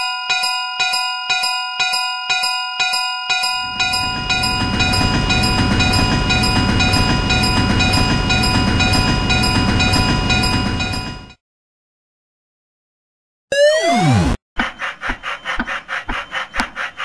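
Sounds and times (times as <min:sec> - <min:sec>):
railroad crossing bell ringing: 0:00.0 - 0:11.4
train rumbling past: 0:03.7 - 0:11.4.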